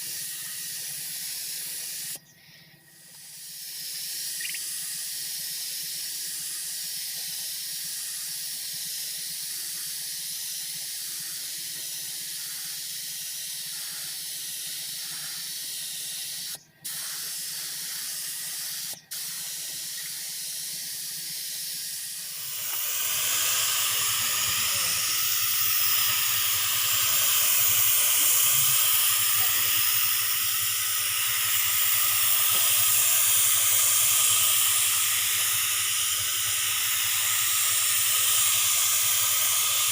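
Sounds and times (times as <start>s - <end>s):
paint spray gun hissing: 0.0s - 2.3s, 3.0s - 39.9s.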